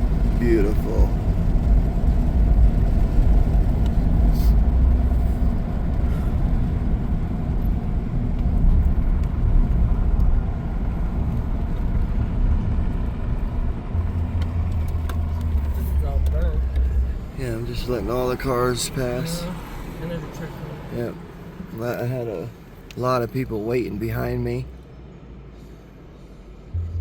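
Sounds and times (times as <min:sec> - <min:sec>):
tyre noise on road: 0:00.0 - 0:21.2
vehicle engine rumble: 0:00.0 - 0:27.0.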